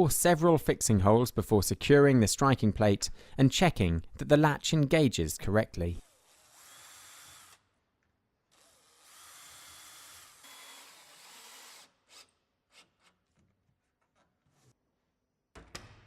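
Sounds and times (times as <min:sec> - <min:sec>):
power drill boring holes: 0:06.1 - 0:07.6, 0:08.5 - 0:12.3.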